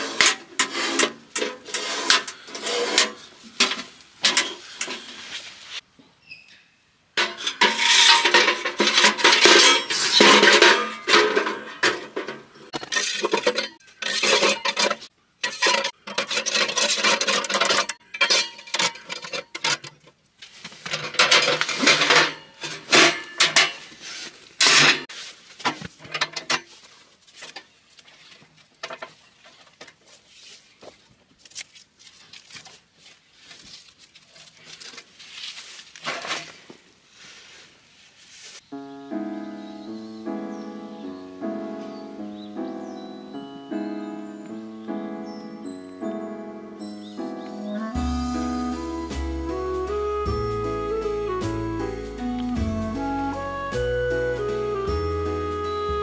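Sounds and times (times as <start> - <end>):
metal utensils scraping cookware: 0.0 - 5.2, 7.2 - 23.9, 24.6 - 25.1.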